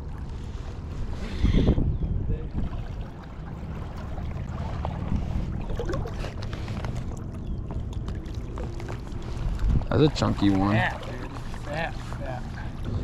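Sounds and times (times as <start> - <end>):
wind rumble on microphone: 0.0 - 13.0
river water flowing: 2.5 - 13.0.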